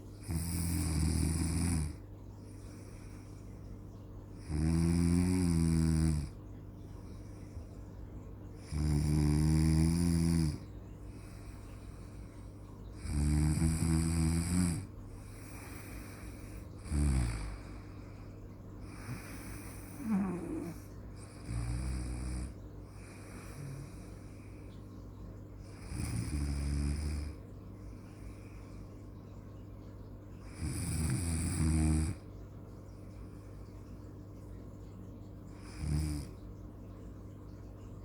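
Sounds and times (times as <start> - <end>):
steady low hum: 0.0 - 38.0
pitched snores: 0.2 - 2.0, 4.4 - 6.4, 8.6 - 10.6, 13.0 - 17.8, 18.8 - 24.2, 25.7 - 27.4, 30.4 - 32.2, 35.6 - 36.4.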